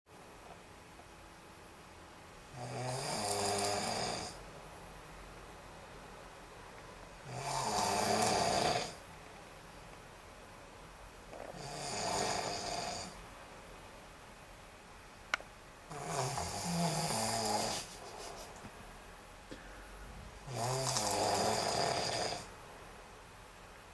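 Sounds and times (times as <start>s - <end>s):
person snoring: 2.5s - 4.4s, 7.2s - 9.0s, 11.4s - 13.2s, 15.9s - 18.2s, 20.4s - 22.5s.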